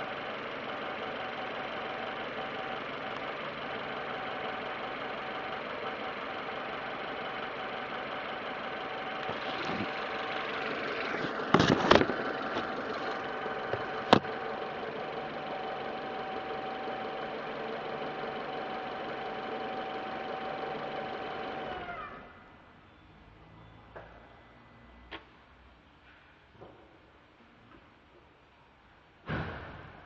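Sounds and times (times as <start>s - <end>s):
car engine idling with whine: 0.0s - 25.2s
sharp engine knocks: 13.7s - 14.3s.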